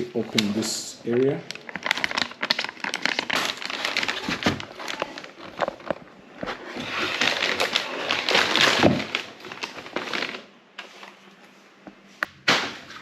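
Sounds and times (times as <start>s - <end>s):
plastic packaging crinkling: 0.0s - 11.2s.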